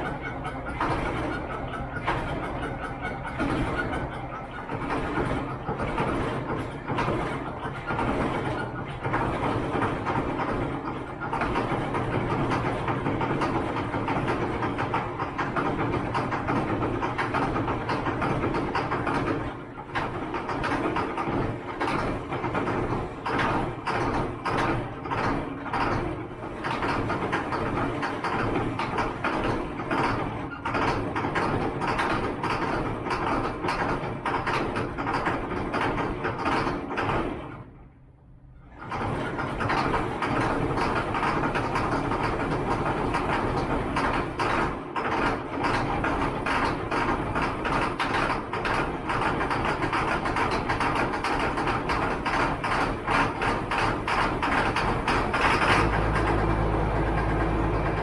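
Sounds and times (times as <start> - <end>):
large diesel engine running: 0.0 - 58.0
rapid rattle: 38.7 - 58.0.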